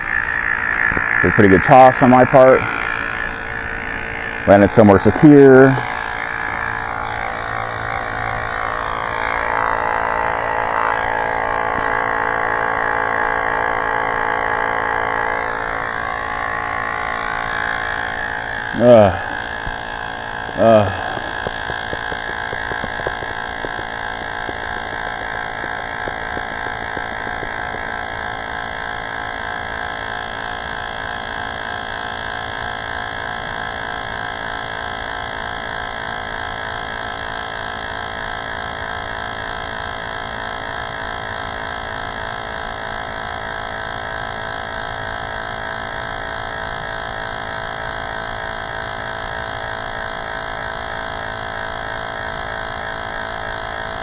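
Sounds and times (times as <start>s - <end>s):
steady multi-tone hum: 0.0s - 54.0s
groan-like voice sounds: 18.8s - 19.4s, 20.6s - 21.3s.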